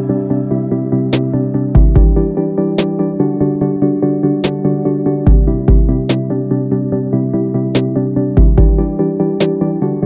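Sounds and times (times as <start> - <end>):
deep bass notes: 0.0 - 2.8, 5.2 - 6.3, 8.4 - 9.1
synthesizer music with beat: 0.0 - 10.0.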